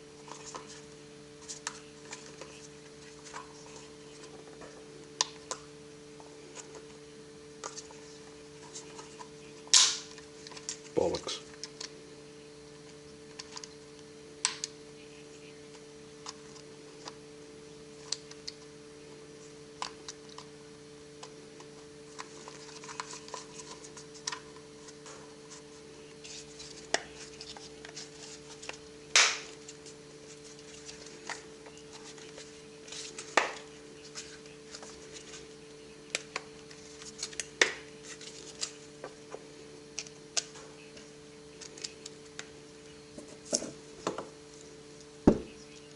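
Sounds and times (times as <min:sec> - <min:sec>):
steady low hum: 0:00.0 - 0:45.9.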